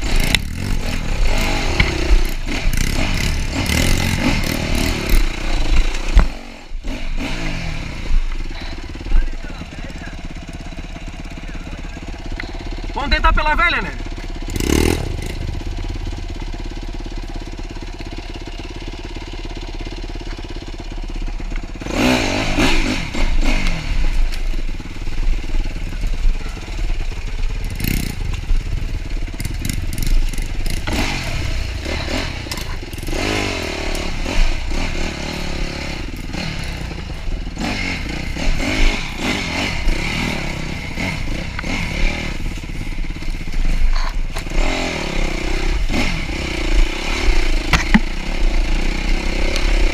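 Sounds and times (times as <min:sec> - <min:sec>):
dirt bike engine revving: 0:00.0 - 0:49.9
bike rattling clatter: 0:24.1 - 0:33.2.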